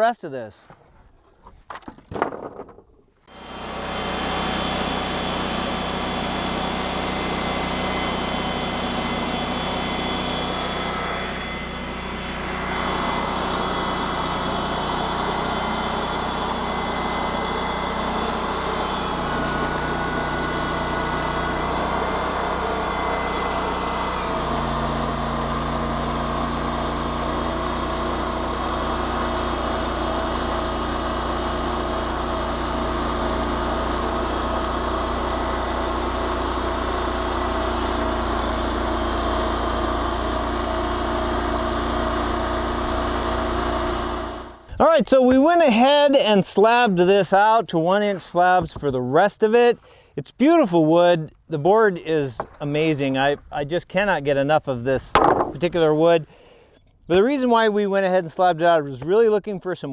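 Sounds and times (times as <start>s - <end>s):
sawmill engine running: 3.2s - 47.4s, 55.1s - 57.7s.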